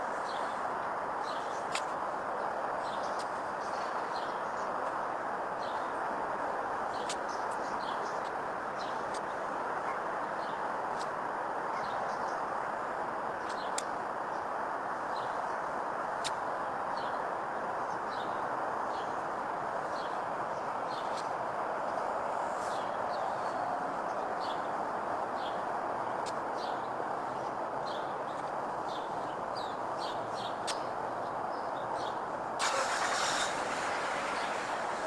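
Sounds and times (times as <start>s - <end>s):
small birds chirping: 0.0s - 32.4s, 33.2s - 35.0s
distant traffic roar: 0.0s - 35.0s
loud hiss: 32.6s - 35.0s.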